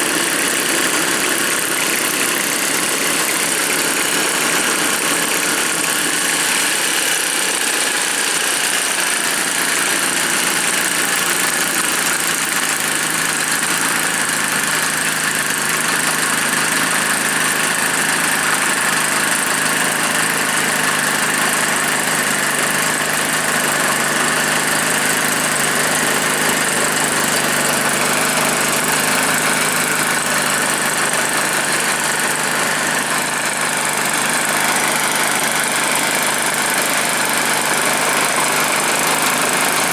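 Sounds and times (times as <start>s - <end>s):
snowblower engine running: 0.0s - 39.9s.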